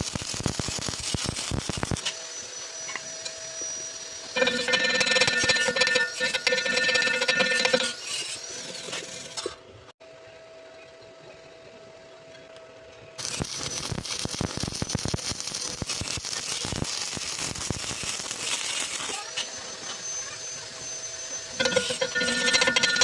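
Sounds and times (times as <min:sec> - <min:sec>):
arc welding crackle: 0:00.0 - 0:09.4, 0:13.2 - 0:23.0.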